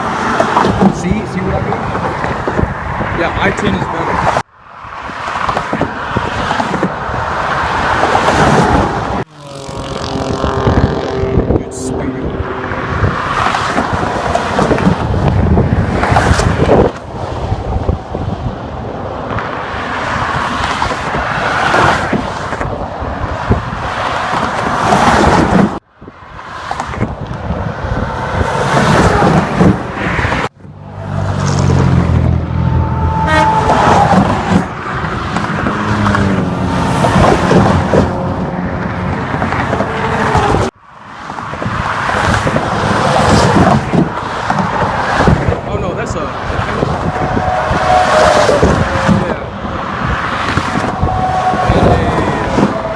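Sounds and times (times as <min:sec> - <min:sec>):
heavy highway traffic passing: 0:00.0 - 0:52.9.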